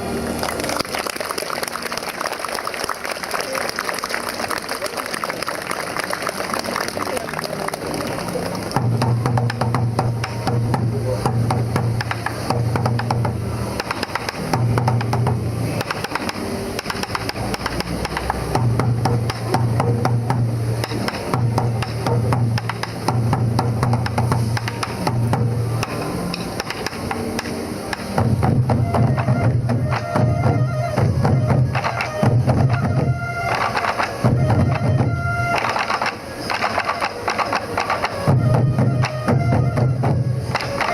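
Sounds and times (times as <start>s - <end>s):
bamboo flutes playing melody: 0.0s - 40.9s
taiko drums beating: 8.6s - 40.9s.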